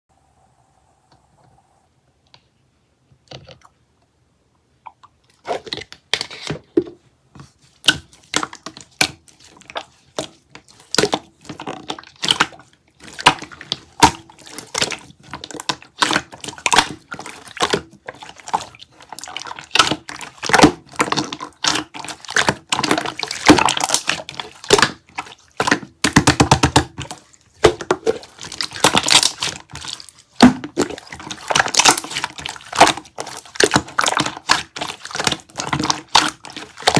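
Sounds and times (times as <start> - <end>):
wet squishes: 4.8 - 6.0, 7.4 - 36.9
sprinkles crunching: 10.6 - 36.9.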